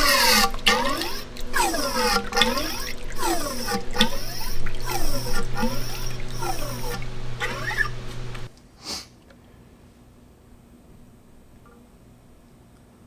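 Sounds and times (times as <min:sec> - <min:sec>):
wet sucking of pumped fork damper: 0:00.0 - 0:08.5.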